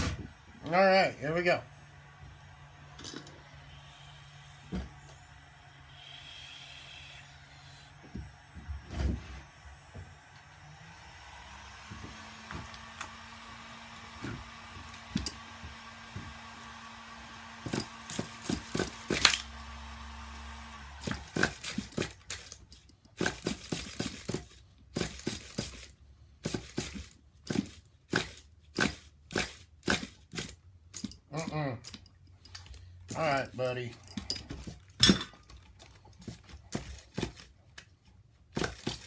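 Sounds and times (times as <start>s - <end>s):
steady hum: 0.0s - 22.0s.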